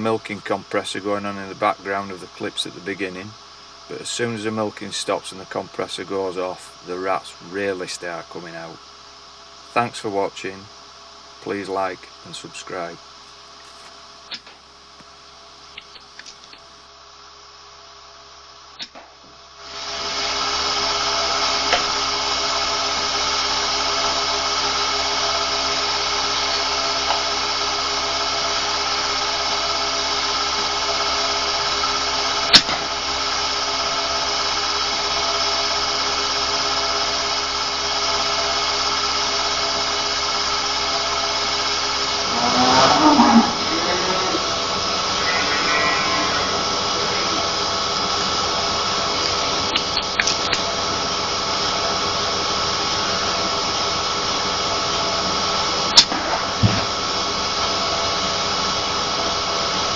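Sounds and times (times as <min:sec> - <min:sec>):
compressor humming and whining: 0:00.0 - 0:16.8.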